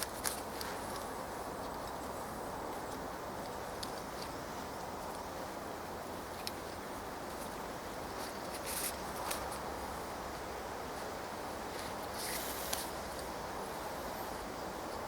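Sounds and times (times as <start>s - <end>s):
cord handling clicks and rustles: 0.0s - 2.1s
outdoor background hiss: 0.0s - 15.0s.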